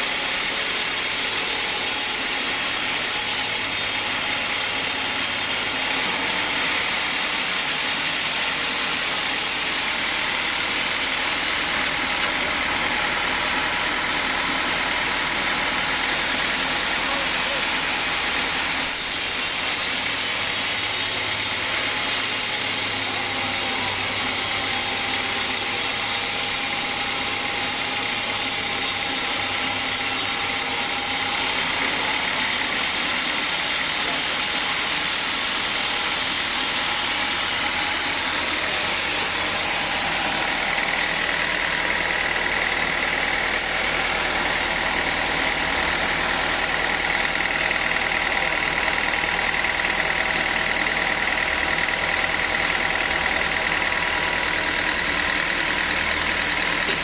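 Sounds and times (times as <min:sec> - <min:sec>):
sawmill saw cutting wood: 0:00.0 - 0:57.0.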